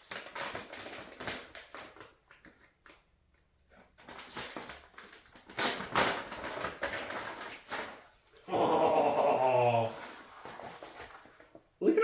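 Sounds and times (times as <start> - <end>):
packaging rustling: 0.0 - 3.0, 4.0 - 8.5, 9.8 - 11.6.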